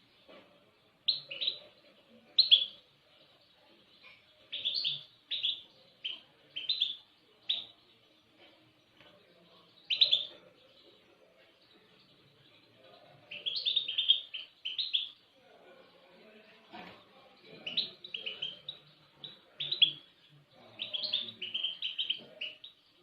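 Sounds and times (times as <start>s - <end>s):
songbird chirping: 0.0s - 23.0s.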